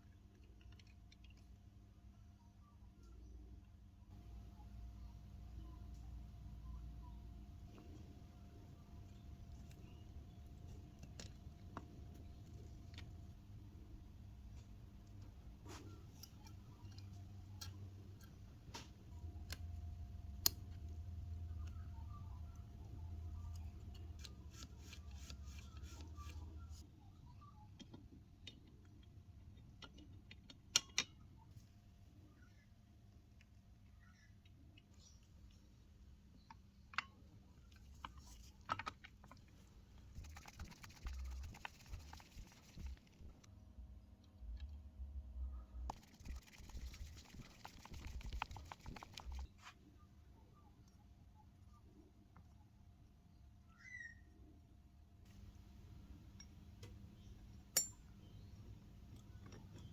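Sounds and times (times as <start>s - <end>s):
small sharp clicks and ticks: 36.4s - 43.5s, 45.9s - 49.6s
small mechanical clicks and ticks: 45.9s - 49.5s.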